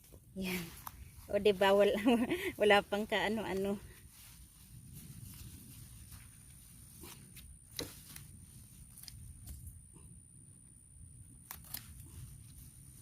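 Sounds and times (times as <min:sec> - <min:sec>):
plants rustling: 0:00.0 - 0:10.0.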